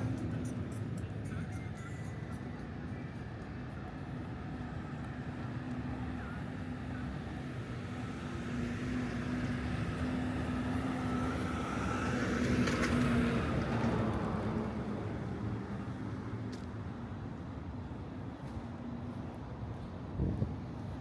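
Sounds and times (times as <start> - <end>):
car passing: 8.1 - 15.9.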